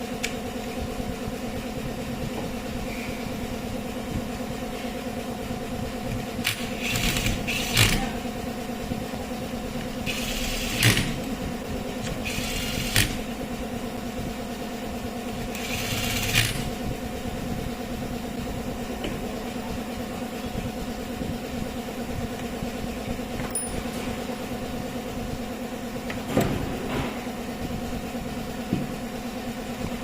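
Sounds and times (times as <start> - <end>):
hedge trimmer motor humming: 6.4 - 8.3, 9.9 - 13.4, 15.3 - 16.8.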